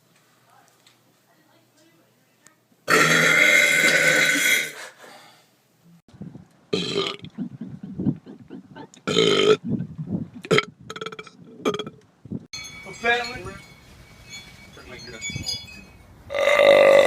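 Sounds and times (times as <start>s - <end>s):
person belching loudly: 2.9s - 4.7s, 6.7s - 7.4s, 9.0s - 9.6s, 10.4s - 12.0s, 16.3s - 17.0s.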